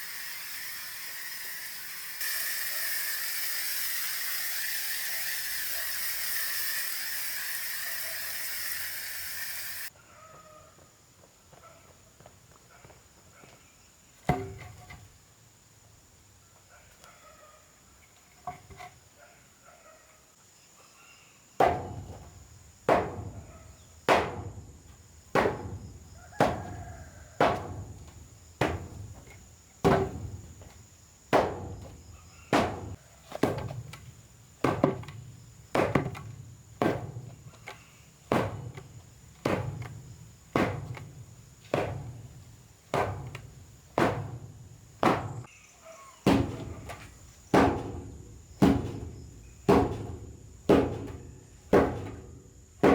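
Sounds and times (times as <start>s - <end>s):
tool striking wood: 21.6s - 22.2s, 22.9s - 23.4s, 24.1s - 24.6s, 25.4s - 26.8s, 27.4s - 28.0s, 28.6s - 30.4s, 31.3s - 34.0s, 34.6s - 37.3s, 38.3s - 40.0s, 40.6s - 41.1s, 41.7s - 42.2s, 42.9s - 45.5s, 46.3s - 52.9s.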